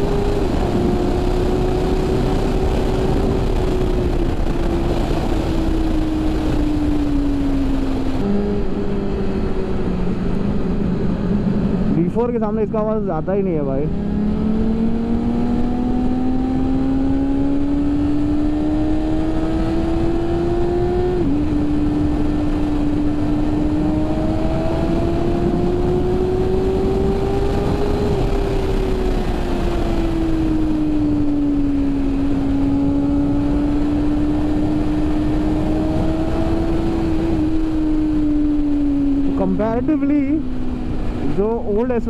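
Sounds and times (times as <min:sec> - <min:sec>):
motorcycle engine revving: 0:00.0 - 0:42.0
wind rush: 0:00.0 - 0:42.0.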